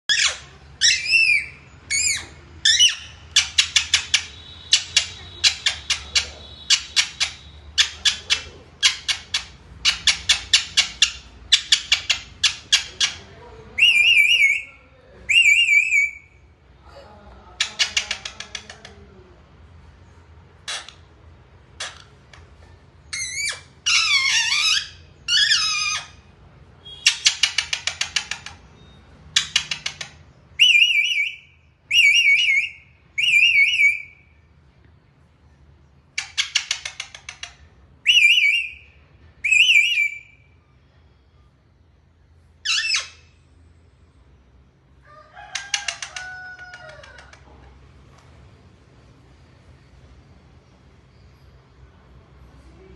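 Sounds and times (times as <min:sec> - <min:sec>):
parrot chattering and whistling: 0:00.1 - 0:16.5, 0:17.5 - 0:19.1, 0:20.6 - 0:34.4, 0:36.1 - 0:40.6, 0:42.6 - 0:43.4, 0:45.1 - 0:47.5.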